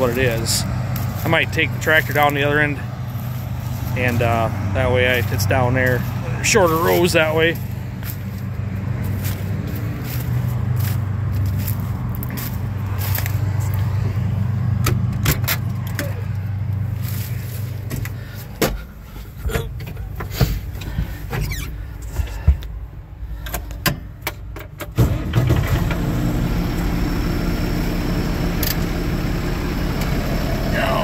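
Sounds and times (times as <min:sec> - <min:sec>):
farm machine engine running: 0:00.0 - 0:21.2, 0:25.0 - 0:31.0
scattered clicks and knocks: 0:14.8 - 0:16.2, 0:23.4 - 0:25.0.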